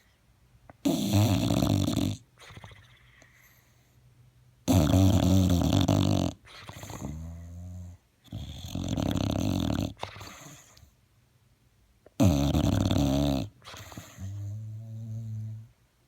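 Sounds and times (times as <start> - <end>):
dog snoring loudly: 0.8 - 3.1, 4.6 - 10.8, 12.2 - 15.7.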